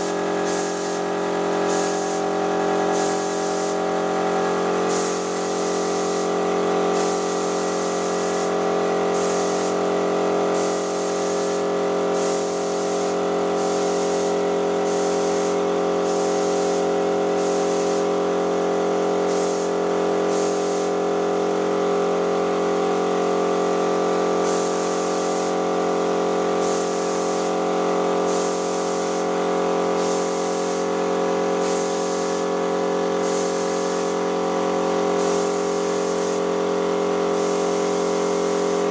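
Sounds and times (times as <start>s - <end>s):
paint spray hissing: 0.0s - 3.8s, 4.8s - 18.2s, 19.2s - 21.0s, 24.4s - 25.6s, 26.6s - 27.6s, 28.2s - 29.4s, 30.0s - 31.0s, 31.6s - 32.6s, 33.2s - 34.3s, 35.1s - 36.6s, 37.3s - 38.9s
paint sprayer motor humming: 0.0s - 38.9s.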